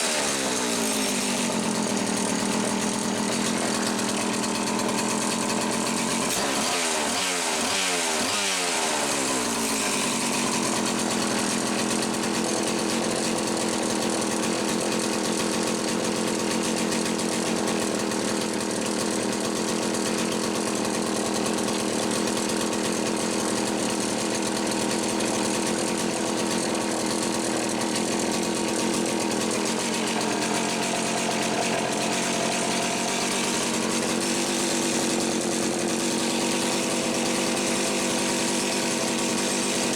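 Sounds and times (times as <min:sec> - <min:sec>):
chainsaw engine running: 0:00.0 - 0:39.9.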